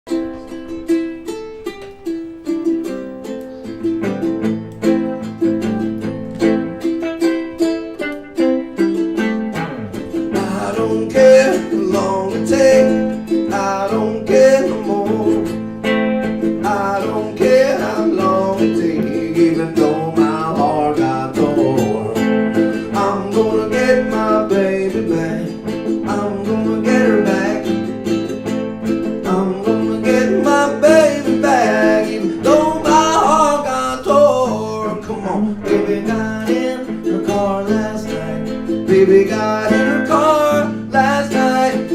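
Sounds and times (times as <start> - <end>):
strummed acoustic guitar: 0.1 - 41.9
man singing: 9.5 - 41.9.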